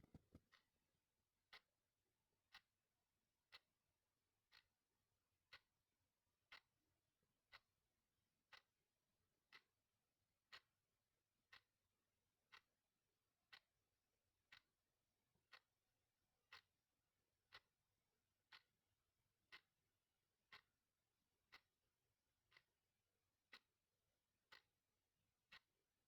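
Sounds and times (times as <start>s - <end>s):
clock ticking: 2.5s - 2.7s, 3.5s - 3.7s, 5.5s - 5.7s, 6.5s - 6.7s, 8.5s - 8.7s, 9.5s - 9.7s, 10.5s - 10.7s, 11.5s - 11.7s, 13.5s - 13.7s, 14.5s - 14.7s, 15.4s - 15.7s, 16.5s - 16.7s, 17.5s - 17.8s, 18.5s - 18.7s, 19.5s - 19.7s, 20.5s - 20.8s, 21.5s - 21.7s, 22.5s - 22.7s, 23.5s - 23.7s, 24.5s - 24.7s, 25.5s - 25.7s.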